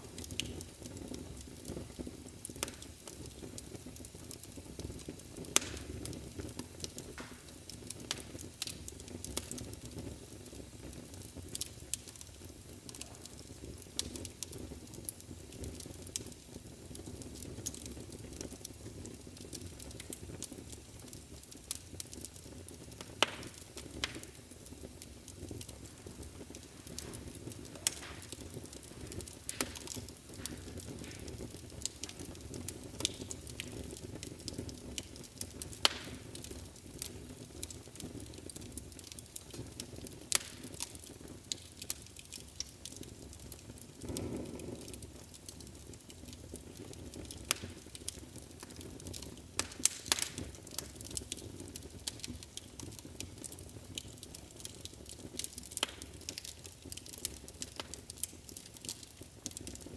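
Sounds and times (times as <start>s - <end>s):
fire crackling and popping: 0.0s - 59.9s
fire flame rushing: 23.5s - 35.1s.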